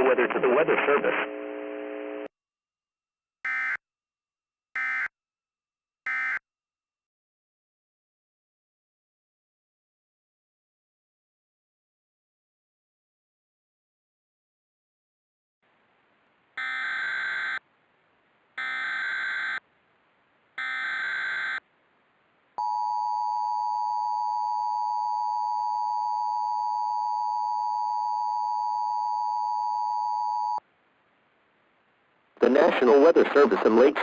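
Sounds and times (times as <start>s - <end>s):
data tone bursts: 6.1s - 6.4s.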